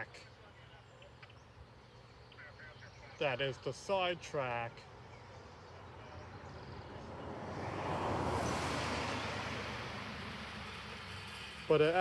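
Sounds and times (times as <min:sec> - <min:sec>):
vehicle passing by: 0:05.9 - 0:12.0.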